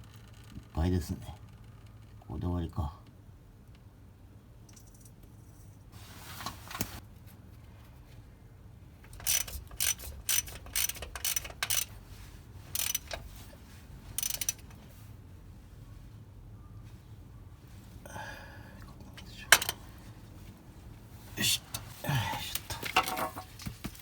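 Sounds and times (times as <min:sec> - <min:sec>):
ratchet tool clicking: 0:09.1 - 0:11.9, 0:12.7 - 0:13.3, 0:14.2 - 0:14.8.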